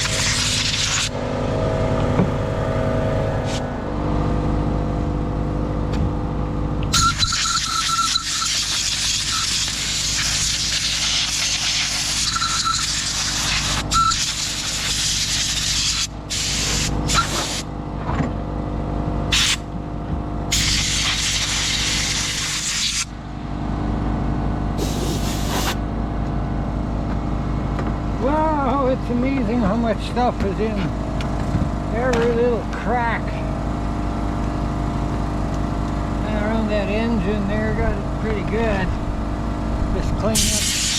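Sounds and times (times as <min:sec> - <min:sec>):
air compressor running: 0:00.0 - 0:40.9
air blow gun hissing: 0:08.4 - 0:17.6, 0:20.5 - 0:23.1, 0:24.8 - 0:25.8, 0:40.4 - 0:40.9.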